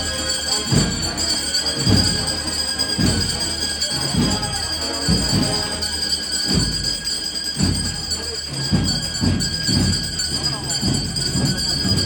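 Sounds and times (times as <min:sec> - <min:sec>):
deep drum beats: 0:00.0 - 0:12.0
procession band music: 0:00.0 - 0:12.0.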